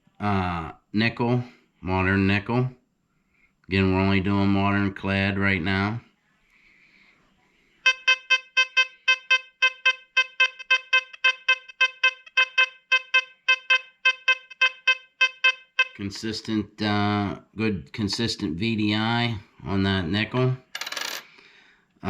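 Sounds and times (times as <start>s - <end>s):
metal detector buzzy beeping: 7.8s - 16.4s.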